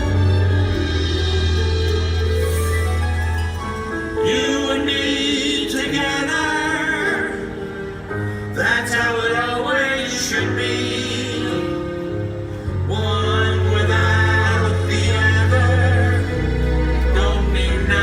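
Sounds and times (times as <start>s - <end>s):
low sustained bass: 0.0s - 4.7s.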